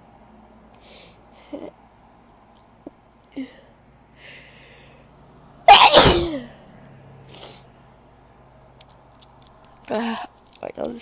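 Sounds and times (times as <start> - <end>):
breathing: 0.8 - 1.5, 3.4 - 5.2
woman sneezing: 5.7 - 6.5.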